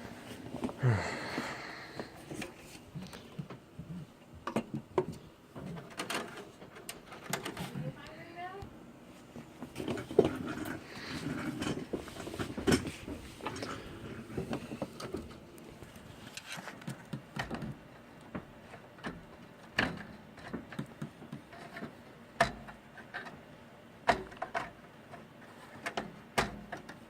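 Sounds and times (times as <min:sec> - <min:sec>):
computer parts clicking and knocking: 0:04.4 - 0:07.6, 0:16.8 - 0:23.4, 0:24.0 - 0:27.0.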